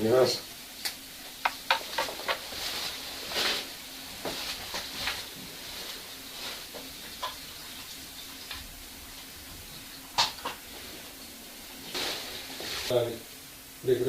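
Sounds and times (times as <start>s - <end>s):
soft hisses: 11.8s - 13.2s.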